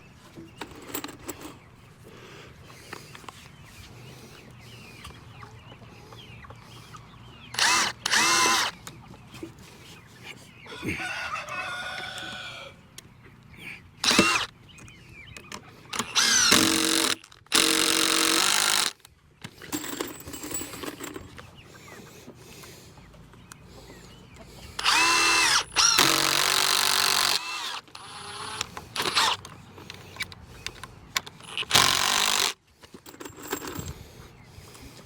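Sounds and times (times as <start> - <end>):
cordless drill whining: 7.5 - 8.8, 14.0 - 14.5, 15.9 - 19.0, 24.8 - 29.4, 31.4 - 32.6
rooster crowing: 10.7 - 12.8.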